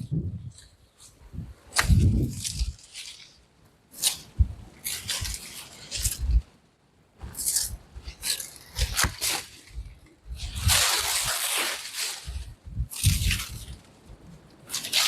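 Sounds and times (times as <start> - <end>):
wind buffeting microphone: 0.0 - 2.8, 4.2 - 6.5, 7.2 - 11.6, 12.2 - 14.5
dry leaves rustling and crackling: 1.7 - 6.5, 7.2 - 15.0.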